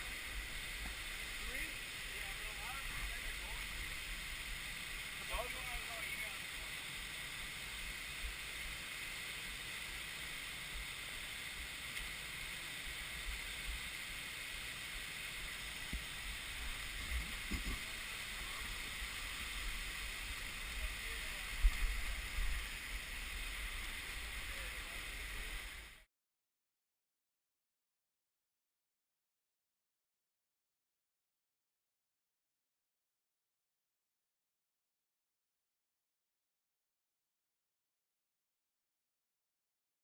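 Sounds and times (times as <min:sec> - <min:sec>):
waterfall and river rushing: 0:00.0 - 0:26.1.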